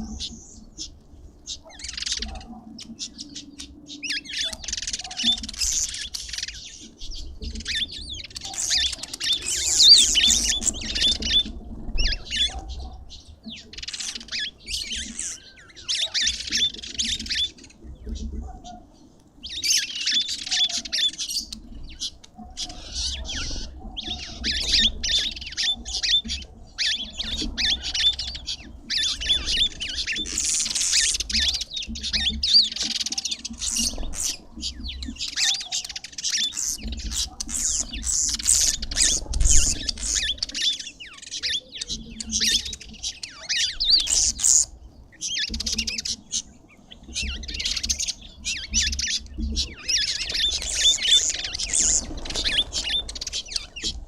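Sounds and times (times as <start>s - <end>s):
small birds chirping and squawking: 0.0s - 54.0s.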